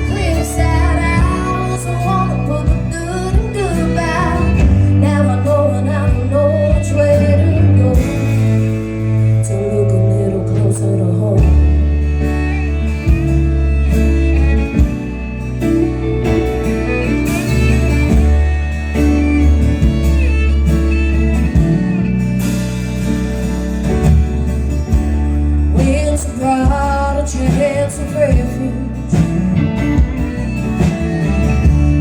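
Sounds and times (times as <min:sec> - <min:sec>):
bass line: 0:00.0 - 0:32.0
guitar lead: 0:00.0 - 0:32.0
live country band playing: 0:00.0 - 0:32.0.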